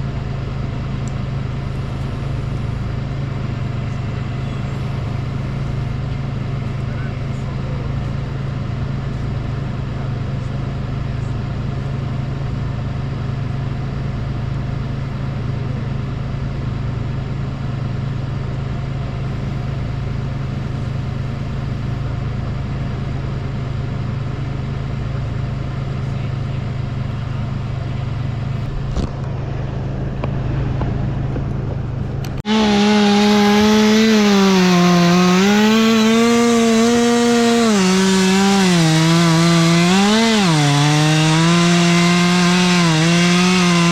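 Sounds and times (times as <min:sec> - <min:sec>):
engine droning: 0:00.0 - 0:43.9
chainsaw cutting wood: 0:32.3 - 0:43.9.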